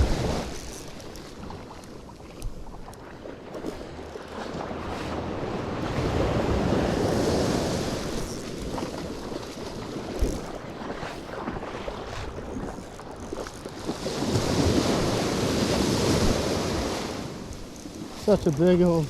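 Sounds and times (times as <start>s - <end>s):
surf washing onto beach: 0.0s - 0.6s, 4.4s - 10.2s, 13.7s - 19.0s.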